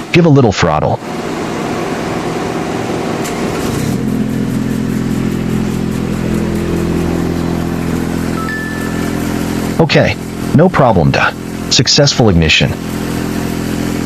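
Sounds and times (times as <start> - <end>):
loader engine running: 1.0 - 14.0.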